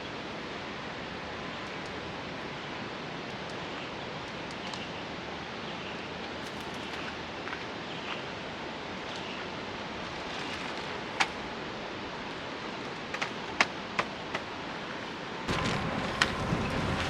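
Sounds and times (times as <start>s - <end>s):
outdoor background noise: 0.0s - 17.0s
camping gear clicks and knocks: 12.9s - 14.6s.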